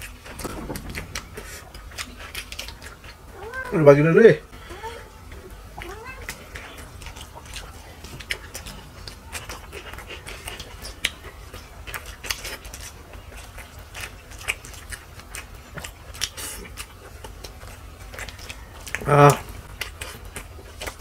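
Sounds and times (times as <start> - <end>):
chewing with mouth smacks: 5.3 - 21.0.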